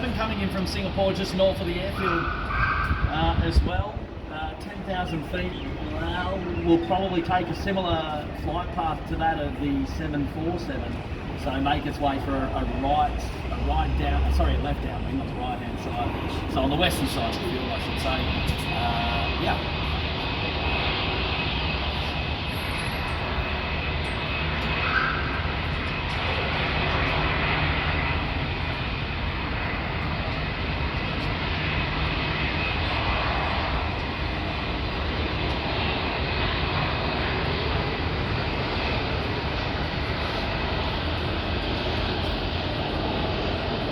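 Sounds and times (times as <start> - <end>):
jet engines rushing: 0.0 - 43.9.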